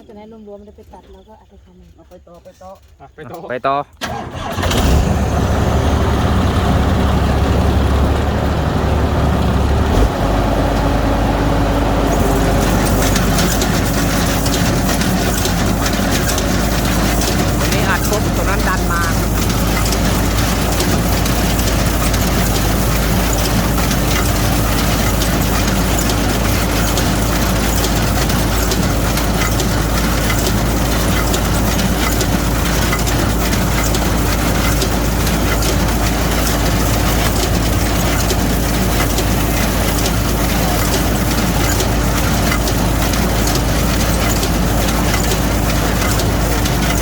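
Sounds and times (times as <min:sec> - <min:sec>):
machine engine drone: 0:04.0 - 0:47.0
baler mechanism clattering: 0:11.6 - 0:47.0.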